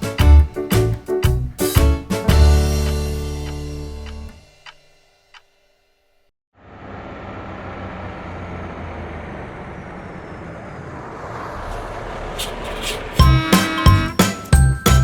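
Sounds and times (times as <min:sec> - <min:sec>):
bus engine rumble: 0:06.6 - 0:15.0
traffic rumble: 0:06.6 - 0:15.0
bouncy music with chimes: 0:13.2 - 0:15.0.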